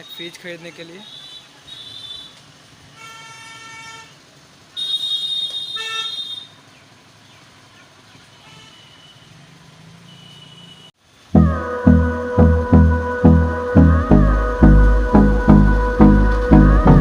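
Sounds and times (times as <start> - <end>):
vehicle horns honking: 0.0 - 6.6, 8.3 - 9.4, 10.0 - 11.0
low street noise: 0.0 - 17.0.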